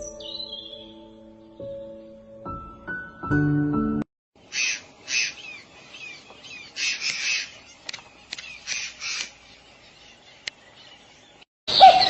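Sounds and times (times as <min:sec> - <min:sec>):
birds giving harsh raspy calls: 0:04.4 - 0:12.0
sharp clicks: 0:07.0 - 0:09.4.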